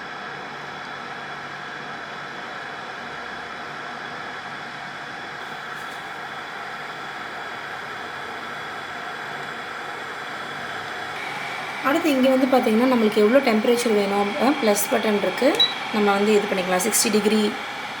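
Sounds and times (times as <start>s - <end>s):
kettle hissing: 5.8s - 18.0s.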